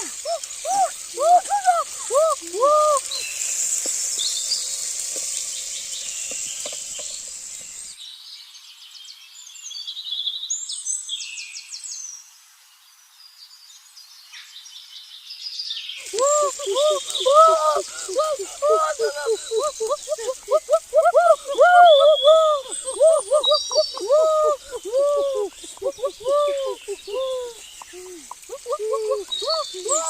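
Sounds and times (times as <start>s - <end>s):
birds calling: 0.0s - 7.9s, 16.0s - 30.0s
high bird chirps: 16.1s - 30.0s.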